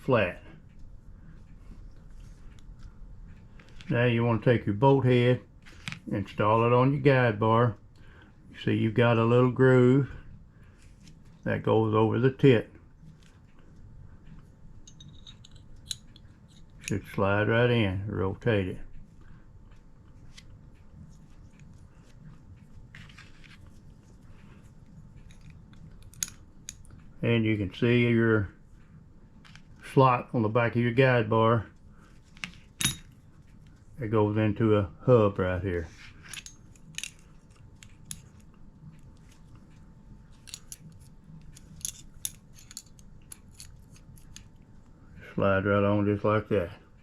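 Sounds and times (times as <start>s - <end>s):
metal parts clicking and scraping: 14.9s - 17.0s, 25.2s - 27.0s, 32.3s - 33.2s, 36.2s - 38.4s, 40.3s - 44.5s.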